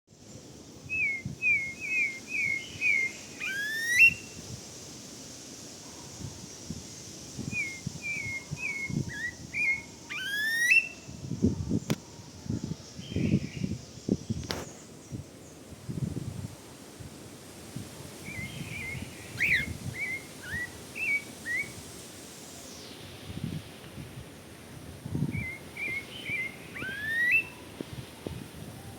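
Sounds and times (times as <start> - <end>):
thrush singing whistled phrases: 0.9 - 4.3, 7.5 - 11.0, 18.3 - 21.8, 25.3 - 27.6.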